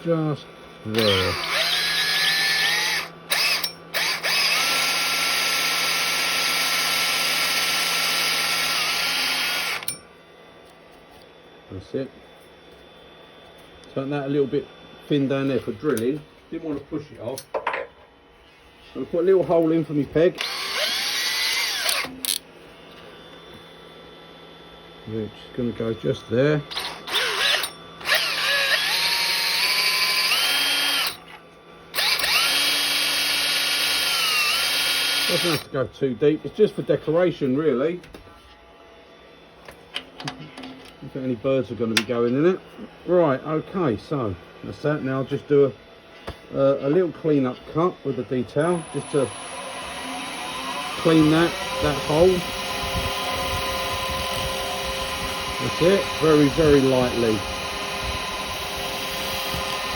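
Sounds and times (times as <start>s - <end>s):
power drill whining: 0.9s - 10.0s, 20.4s - 22.4s, 26.7s - 35.7s, 48.5s - 59.9s.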